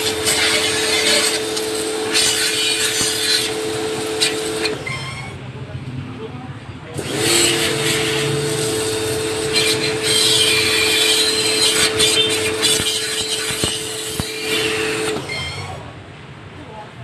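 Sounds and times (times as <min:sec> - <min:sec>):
welding arc crackling hiss: 0:00.0 - 0:05.3, 0:08.2 - 0:15.7.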